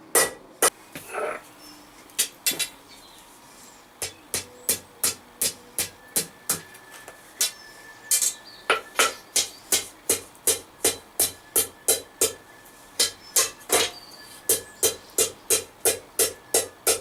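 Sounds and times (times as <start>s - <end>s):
hammer striking steel on anvil: 0.2s - 0.8s, 4.0s - 17.0s.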